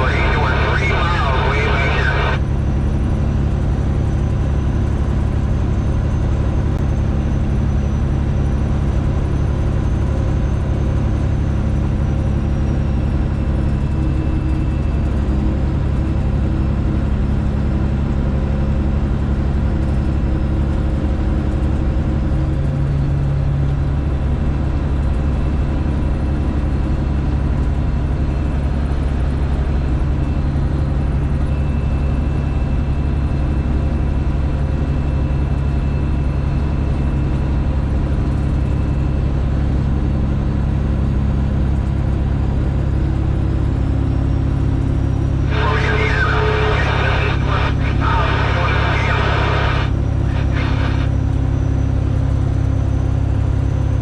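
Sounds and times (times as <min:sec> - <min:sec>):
faint high whine: 0:00.0 - 0:02.4, 0:45.2 - 0:51.3.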